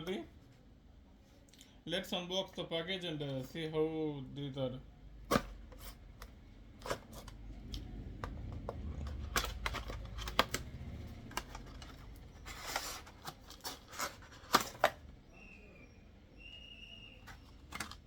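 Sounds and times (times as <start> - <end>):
cardboard and plastic clicks and scrapes: 5.2 - 15.1, 17.2 - 18.0
packaging rustling: 6.7 - 15.1.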